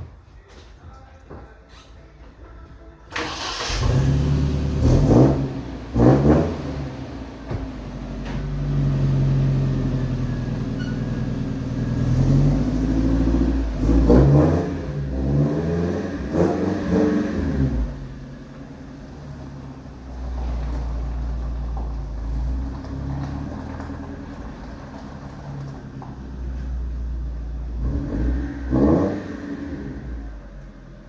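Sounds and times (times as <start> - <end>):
engine starting and revving: 3.1 - 7.2, 27.8 - 30.2.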